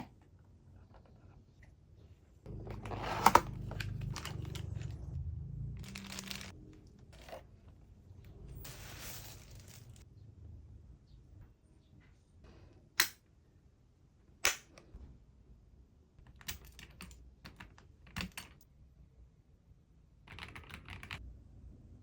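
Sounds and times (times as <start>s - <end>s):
packaging crinkling and tearing: 5.8s - 6.5s.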